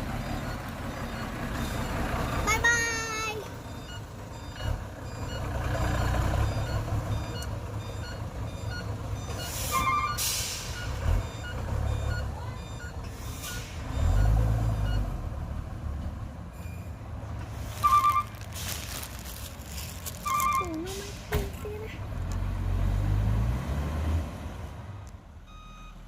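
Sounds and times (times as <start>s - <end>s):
truck engine running: 16.0s - 22.6s.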